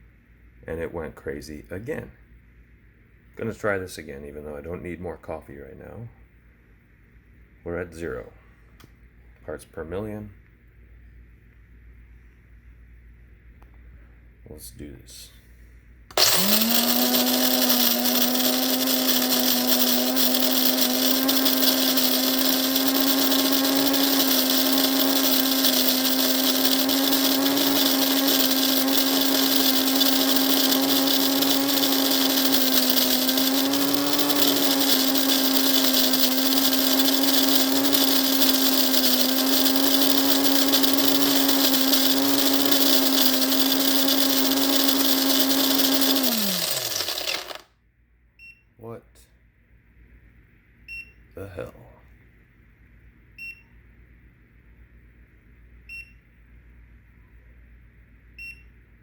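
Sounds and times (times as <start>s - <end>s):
coffee grinder grinding beans: 16.1s - 47.7s.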